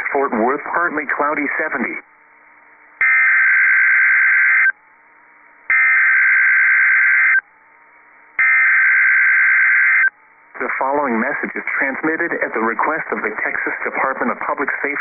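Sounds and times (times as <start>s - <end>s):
faint radio background: 0.0s - 3.0s, 10.1s - 15.0s
shrill digital data tones: 3.0s - 4.8s, 5.7s - 7.4s, 8.4s - 10.2s.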